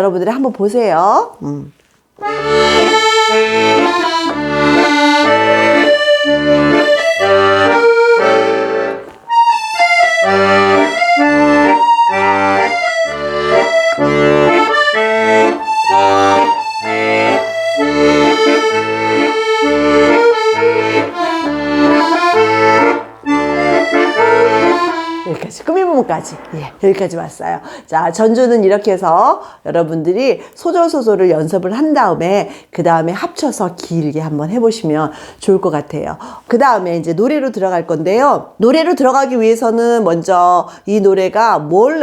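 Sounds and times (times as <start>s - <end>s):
solo accordion melody: 2.2s - 27.2s.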